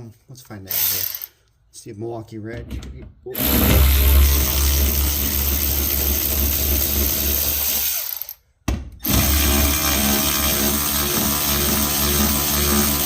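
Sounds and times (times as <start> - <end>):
cordless power tool running: 3.4 - 8.3, 9.0 - 13.0.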